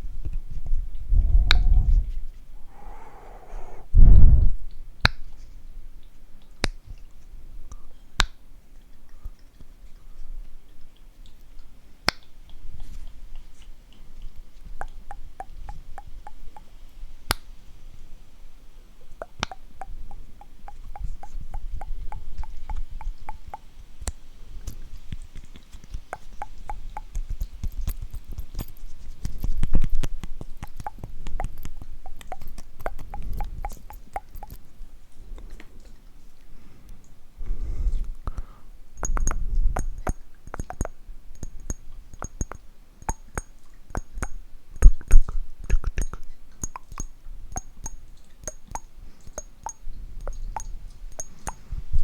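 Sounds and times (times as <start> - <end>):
tongue clicks: 1.2 - 2.0, 2.6 - 5.3, 10.7 - 17.5, 19.1 - 34.8, 38.0 - 51.8
low thuds and rumbling: 3.9 - 4.7.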